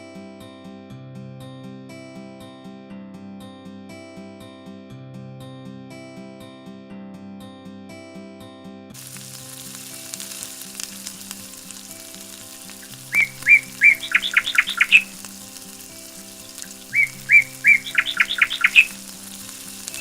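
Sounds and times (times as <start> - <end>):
plucked guitar music: 8.9 - 20.0
food sizzling in a pot: 9.0 - 20.0
bird-like whistled chirps: 12.8 - 15.2, 16.6 - 19.0.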